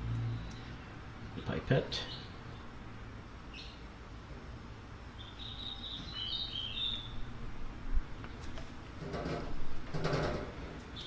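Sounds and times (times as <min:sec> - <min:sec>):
low steady hum: 0:00.0 - 0:11.0
bird chirping: 0:02.0 - 0:02.7, 0:03.5 - 0:03.9, 0:05.1 - 0:07.3.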